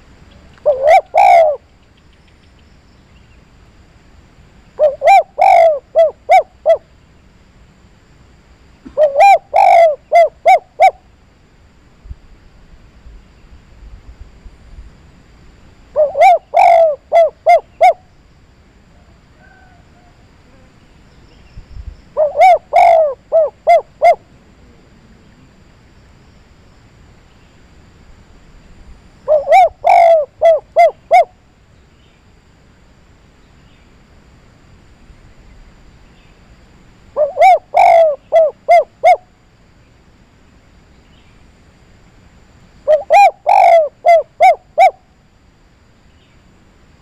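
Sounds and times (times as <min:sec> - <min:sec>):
dove cooing: 0:00.4 - 0:01.7, 0:04.8 - 0:06.9, 0:08.9 - 0:11.1, 0:15.9 - 0:18.1, 0:22.2 - 0:25.5, 0:29.2 - 0:31.4, 0:37.1 - 0:39.3, 0:42.8 - 0:45.0.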